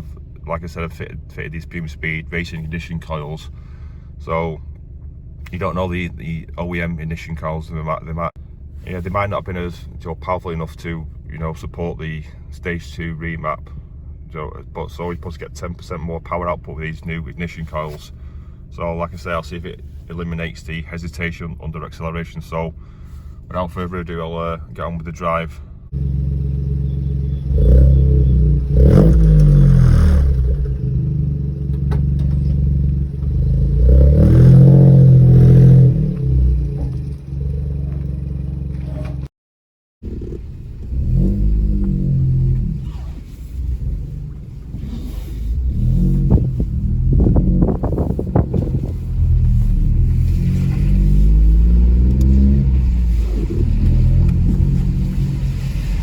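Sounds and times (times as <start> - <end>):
car engine accelerating: 25.9 - 39.3, 40.0 - 56.0.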